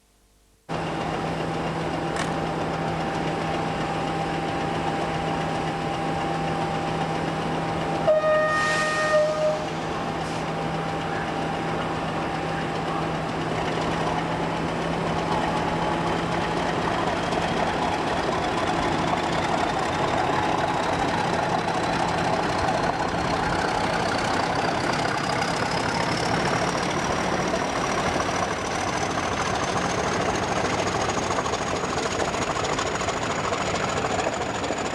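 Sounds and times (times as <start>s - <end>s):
diesel locomotive engine running: 0.7s - 34.9s
rising locomotive whine: 0.7s - 34.9s
locomotive horn blast: 8.0s - 9.8s.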